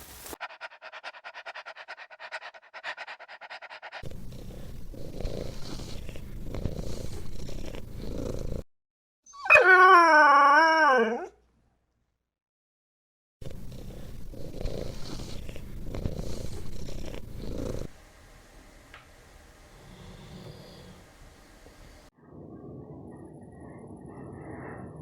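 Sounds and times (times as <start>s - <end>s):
dog pulsing sound: 0.0s - 5.0s
dog howling: 9.3s - 11.4s.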